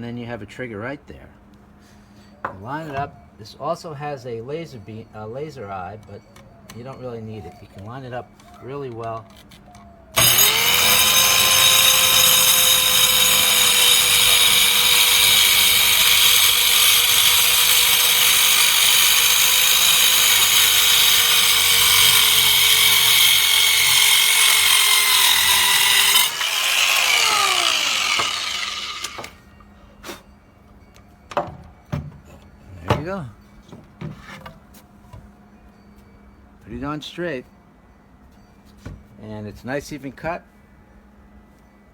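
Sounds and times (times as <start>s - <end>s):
circular saw cutting wood: 10.2s - 29.4s.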